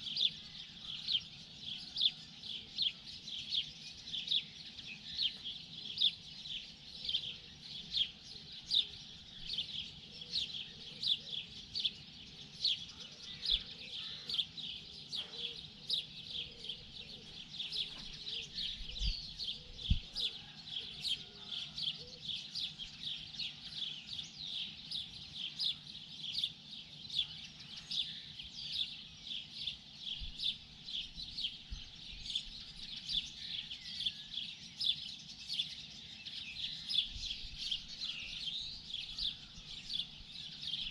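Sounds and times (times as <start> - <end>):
small birds chirping: 0.0 - 40.9.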